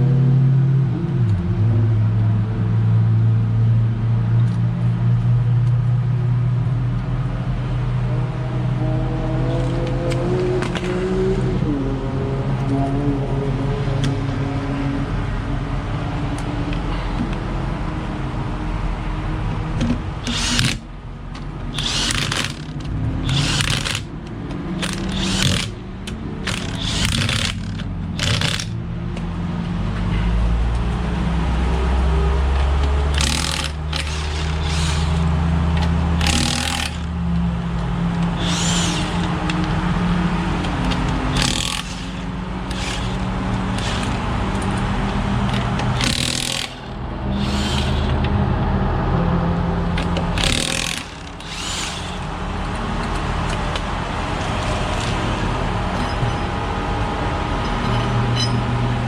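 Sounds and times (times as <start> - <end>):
low engine hum: 0.0 - 59.0
impact wrench bursts: 20.2 - 20.9, 21.7 - 24.2, 24.8 - 28.8, 33.1 - 37.2, 38.2 - 39.9, 40.7 - 48.2, 50.0 - 52.4.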